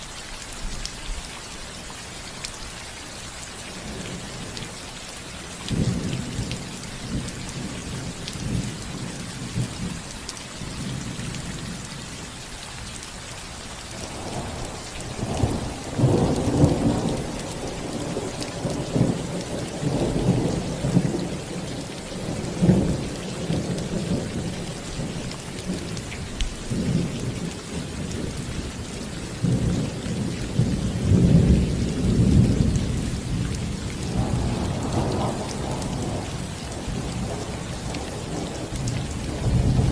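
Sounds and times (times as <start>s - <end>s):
rain on a roof: 0.0s - 39.9s
rolling thunder: 14.1s - 26.0s, 29.4s - 39.9s.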